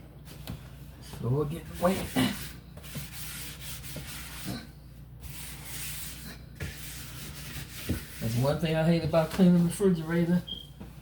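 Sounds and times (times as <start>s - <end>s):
scrubbing inside refrigerator: 1.2s - 10.3s.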